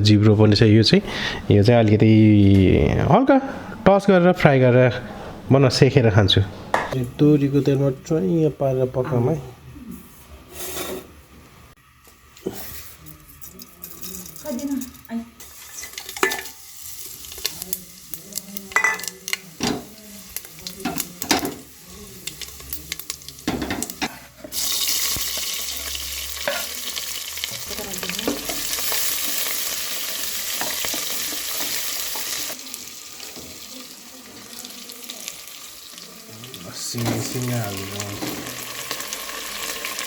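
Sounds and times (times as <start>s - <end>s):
food sizzling in hot oil: 12.4s - 40.0s
metal utensils clinking on pan: 13.3s - 25.6s, 26.3s - 29.6s, 30.5s - 32.5s.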